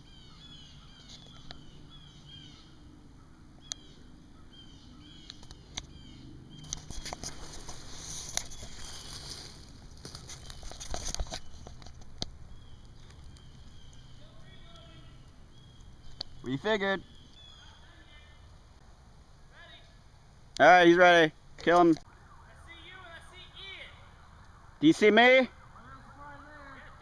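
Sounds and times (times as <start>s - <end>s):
small birds chirping: 0.0s - 18.8s
rustling: 6.6s - 16.5s.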